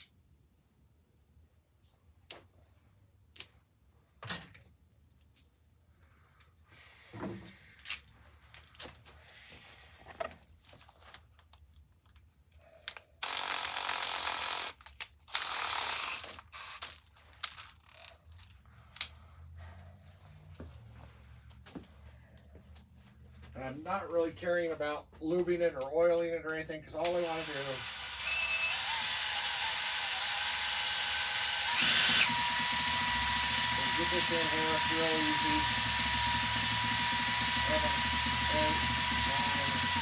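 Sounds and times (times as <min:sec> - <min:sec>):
mechanical whirring: 0:27.1 - 0:40.0.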